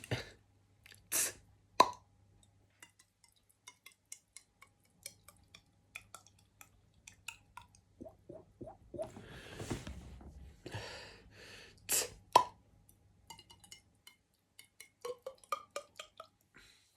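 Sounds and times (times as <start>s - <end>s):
hollow mouth plop: 1.8s - 2.0s, 8.0s - 9.2s, 12.4s - 12.6s
small wet mouth clicks: 2.8s - 8.4s.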